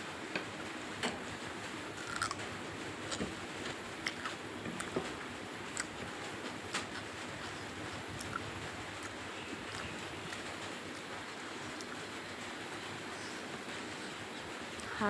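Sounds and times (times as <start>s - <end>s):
person chewing with smacks: 2.0s - 12.0s.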